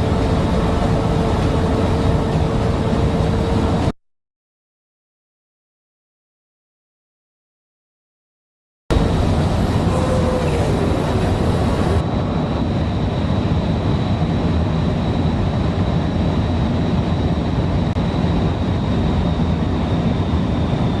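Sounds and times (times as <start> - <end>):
road and wind noise: 0.0 - 3.9, 8.9 - 21.0
high steady whine: 8.9 - 21.0.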